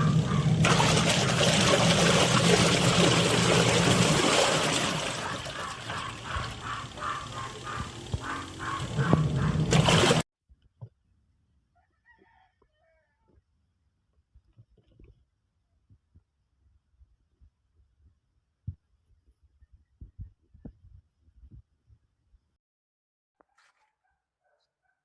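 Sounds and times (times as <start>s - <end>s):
washing machine churning water: 0.0s - 10.2s.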